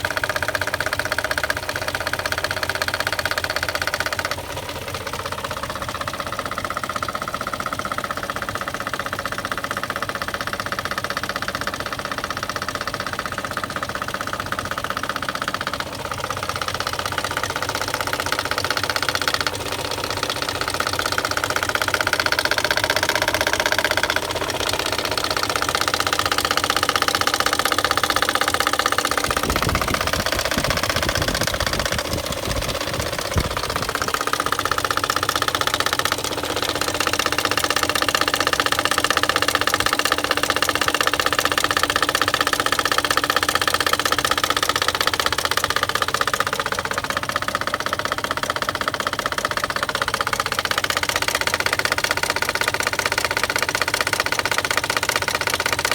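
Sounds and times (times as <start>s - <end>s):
car engine idling: 0.0s - 55.9s
engine knocking: 0.0s - 55.9s.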